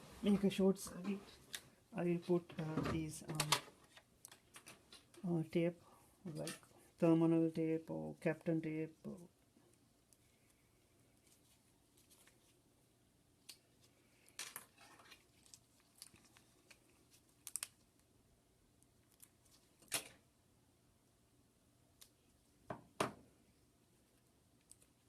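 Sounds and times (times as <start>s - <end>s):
tape clicking and crinkling: 3.3s - 5.3s, 9.7s - 12.6s, 13.4s - 18.1s, 18.8s - 20.2s, 21.9s - 22.3s, 24.2s - 25.0s.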